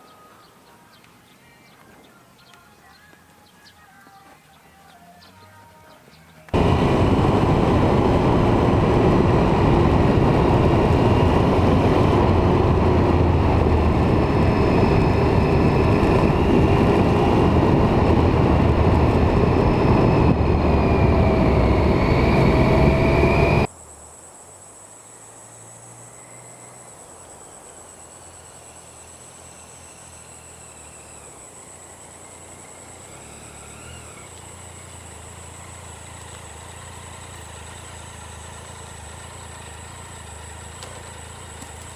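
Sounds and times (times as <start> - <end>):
high-pitched whine: 6.5 - 23.7, 24.8 - 41.9
loud steady rushing noise: 6.5 - 23.7.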